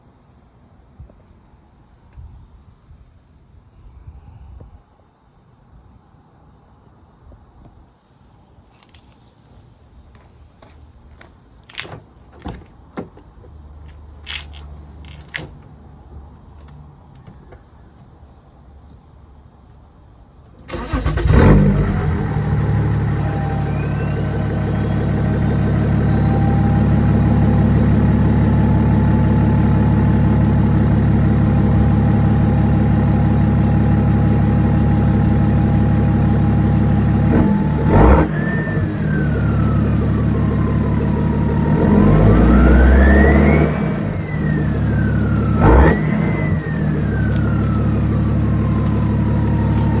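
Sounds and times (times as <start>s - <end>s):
diesel engine starting and idling: 20.5s - 50.0s
engine revving: 20.7s - 30.8s, 36.3s - 50.0s
turbo whistle: 23.2s - 27.7s.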